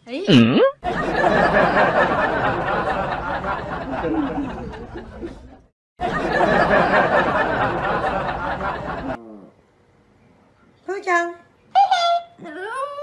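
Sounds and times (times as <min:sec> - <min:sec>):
crowd talking and laughing: 0:00.8 - 0:09.2.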